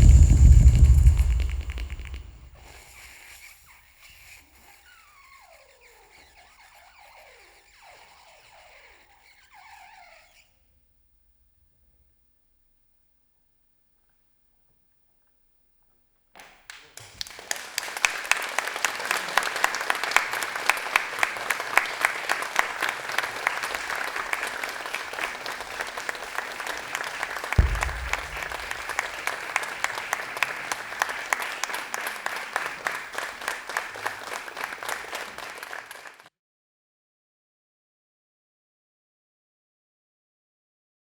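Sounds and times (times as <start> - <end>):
audience applauding: 0.0 - 2.5, 16.4 - 36.3
low thump: 0.0 - 2.6, 27.6 - 29.1.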